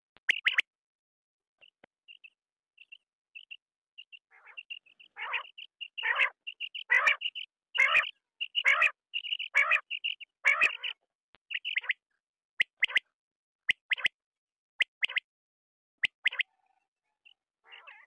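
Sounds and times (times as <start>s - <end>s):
quail chirping and rasping: 0.3s - 0.7s, 1.6s - 12.0s, 12.6s - 13.1s, 13.7s - 14.2s, 14.8s - 15.3s, 16.0s - 18.0s.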